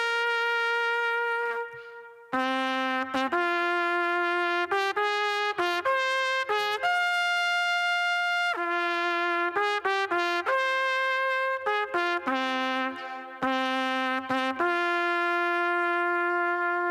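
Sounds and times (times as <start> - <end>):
solo trumpet melody: 0.0 - 16.9.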